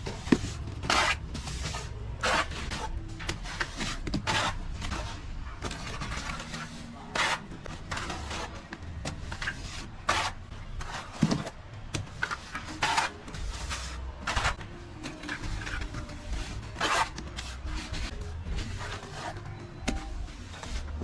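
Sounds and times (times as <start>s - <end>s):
trowel scraping a wall: 0.2s - 5.1s, 5.8s - 8.6s, 9.4s - 11.6s, 12.2s - 14.6s, 15.2s - 19.4s.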